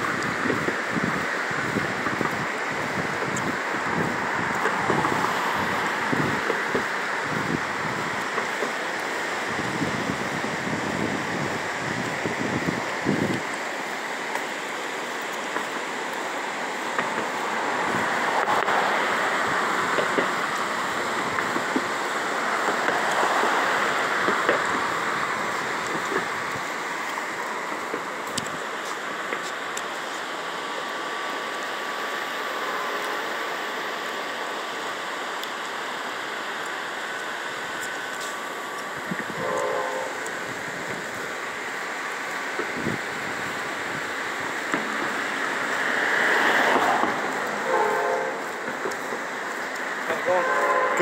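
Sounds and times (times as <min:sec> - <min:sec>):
river water rushing: 0:00.0 - 0:51.0.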